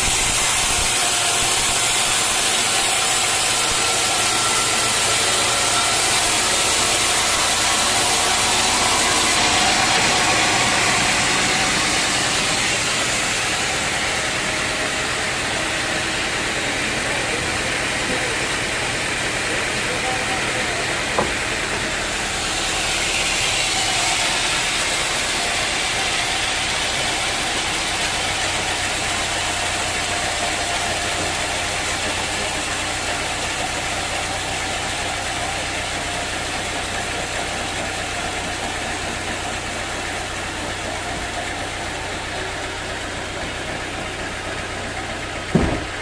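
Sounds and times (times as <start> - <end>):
hiss: 0.0 - 14.3
sawmill machinery humming: 0.0 - 46.0.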